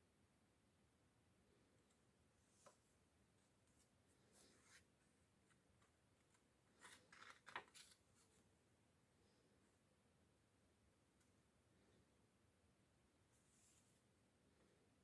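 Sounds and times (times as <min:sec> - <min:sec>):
paper rustling: 0:05.5 - 0:08.4
pages turning clicks: 0:06.8 - 0:08.0.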